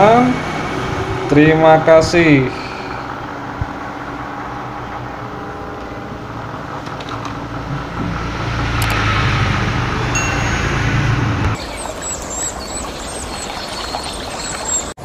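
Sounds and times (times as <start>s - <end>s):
road traffic noise: 0.0s - 12.4s
vehicle engine running: 2.2s - 11.6s.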